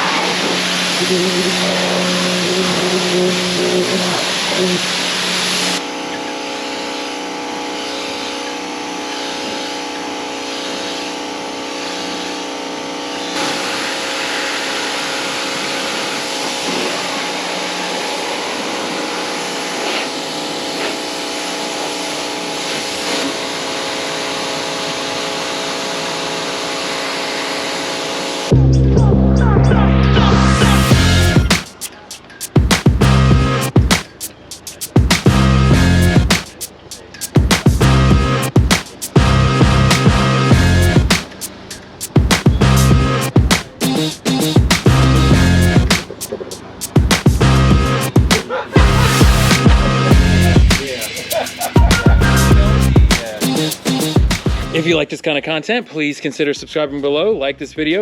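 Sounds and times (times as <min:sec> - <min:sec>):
water spray hissing: 0:00.0 - 0:05.9, 0:30.9 - 0:54.9
pressure washer motor hum: 0:00.0 - 0:28.6, 0:30.7 - 0:55.0.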